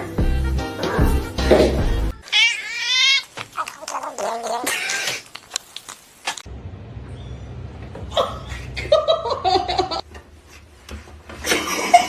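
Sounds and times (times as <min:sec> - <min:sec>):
background music with bass: 0:00.0 - 0:02.2
cat meowing: 0:02.2 - 0:05.2.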